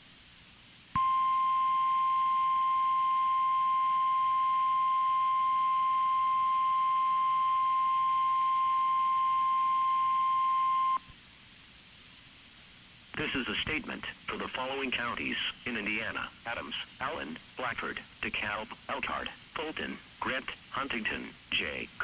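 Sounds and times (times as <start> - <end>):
steady high alarm tone: 1.0 - 11.0.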